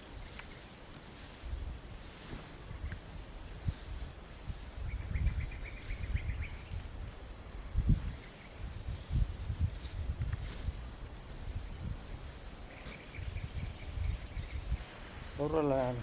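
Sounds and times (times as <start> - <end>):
insects buzzing: 0.0 - 16.0
chirps: 4.8 - 6.9, 11.5 - 15.4.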